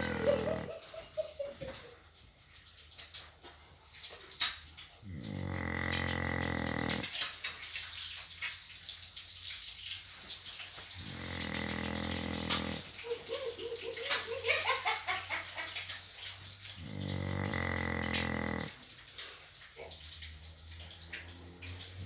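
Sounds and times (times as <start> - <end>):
person snoring: 0.0 - 0.7, 5.1 - 7.1, 11.0 - 12.9, 16.8 - 18.8.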